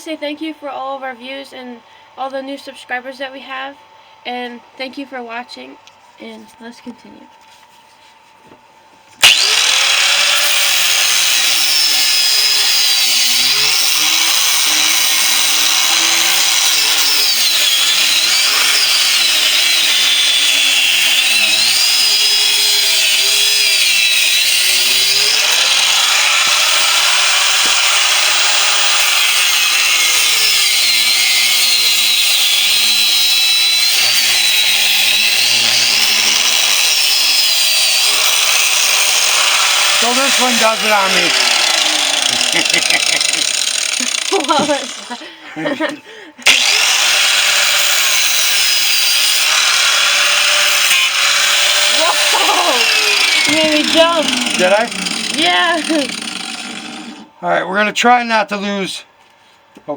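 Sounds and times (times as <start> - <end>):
angle grinder cutting steel: 9.2 - 45.8, 46.4 - 57.4.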